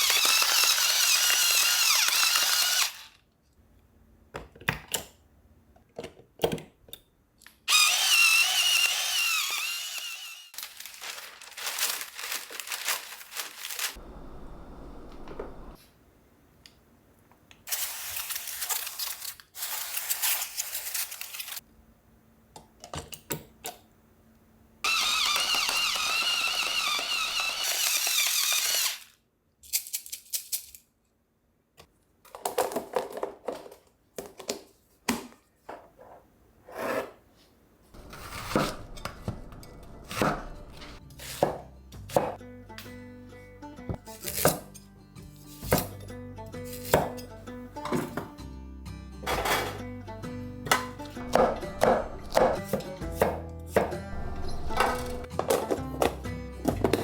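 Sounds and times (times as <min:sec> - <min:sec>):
blender motor running: 0:00.0 - 0:03.1, 0:07.7 - 0:10.5, 0:24.9 - 0:29.1
kitchen handling clicks and knocks: 0:49.2 - 0:49.9.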